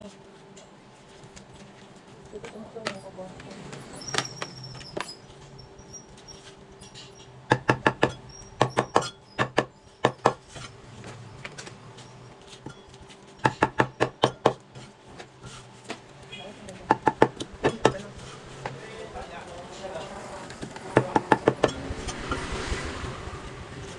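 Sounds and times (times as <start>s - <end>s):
knife chopping on cutting board: 7.5s - 10.6s, 13.4s - 14.6s, 16.8s - 18.8s, 20.7s - 21.8s.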